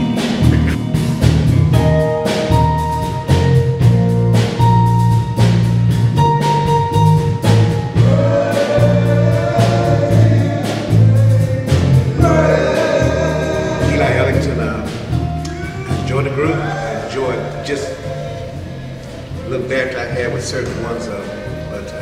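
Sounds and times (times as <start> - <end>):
drum beat and bass: 0.0 - 16.7
men's vocal group singing: 7.7 - 22.0.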